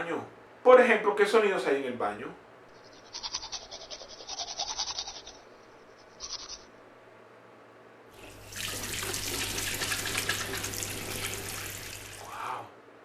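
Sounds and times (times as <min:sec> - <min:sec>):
toothbrush scrubbing: 0:02.9 - 0:05.4
tap water running into sink: 0:08.2 - 0:12.3.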